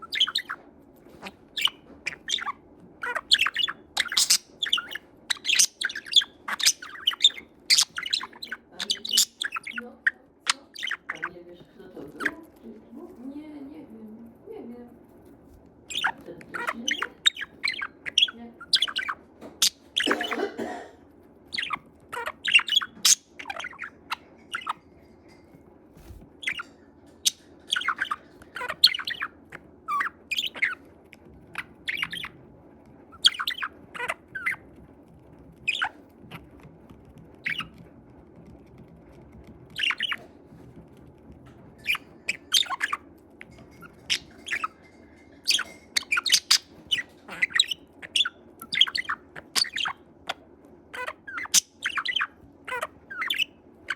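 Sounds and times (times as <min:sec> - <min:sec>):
budgerigar chirping: 0:00.0 - 0:11.4, 0:15.9 - 0:20.7, 0:21.5 - 0:24.8, 0:26.4 - 0:32.4, 0:33.1 - 0:34.7, 0:35.6 - 0:36.7, 0:37.4 - 0:37.8, 0:39.7 - 0:40.3, 0:41.8 - 0:43.1, 0:43.7 - 0:53.9.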